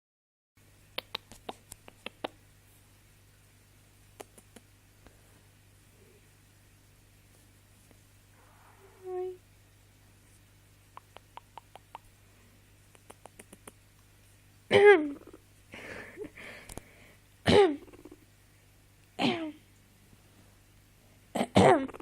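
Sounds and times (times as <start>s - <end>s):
faint quick clicks: 1.0s - 2.4s, 11.0s - 12.1s, 12.9s - 14.1s
soft breathing: 5.0s - 6.3s, 15.7s - 17.3s
person clearing throat: 14.7s - 15.3s, 17.4s - 18.1s, 19.2s - 19.6s, 21.4s - 22.0s.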